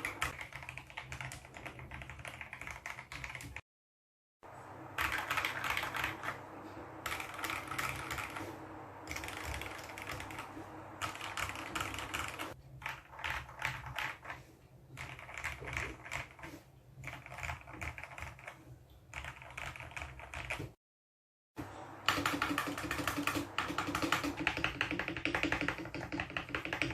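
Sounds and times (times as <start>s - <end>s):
mechanical keyboard typing: 0.0s - 3.6s, 5.0s - 6.4s, 7.0s - 14.4s, 15.0s - 20.8s, 22.1s - 26.9s
steady low hum: 4.4s - 12.8s.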